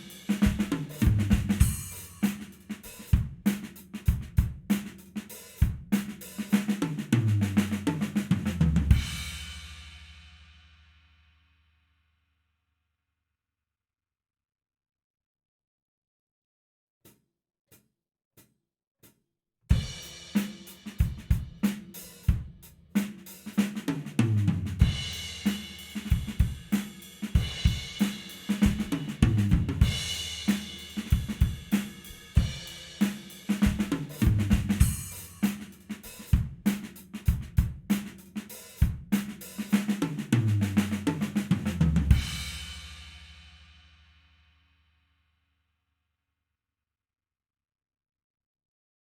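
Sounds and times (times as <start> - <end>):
acoustic drum kit groove: 0.0 - 10.4, 19.7 - 43.8.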